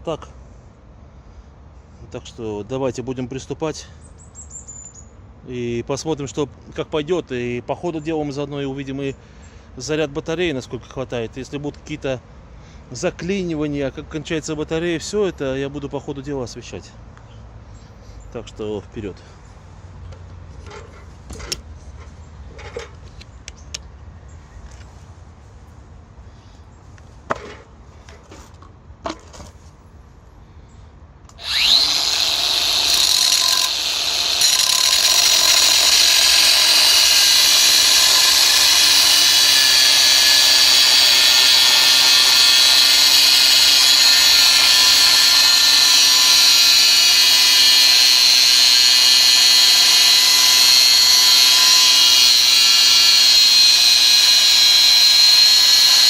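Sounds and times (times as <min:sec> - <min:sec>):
angle grinder cutting steel: 0:31.3 - 0:56.0.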